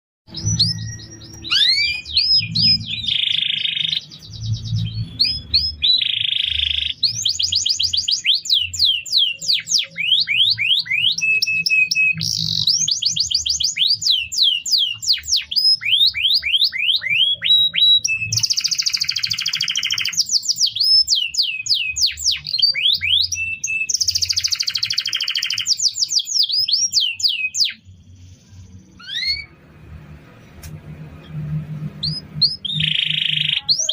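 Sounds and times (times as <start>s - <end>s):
faint low rumble: 0.3s - 6.0s, 27.8s - 33.9s
canary singing: 0.3s - 33.9s.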